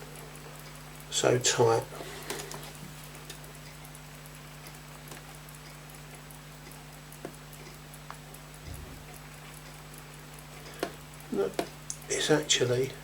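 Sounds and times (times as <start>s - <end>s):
clock ticking fast: 0.0s - 13.0s
low electrical hum: 0.0s - 13.0s
small clicks: 2.3s - 12.1s.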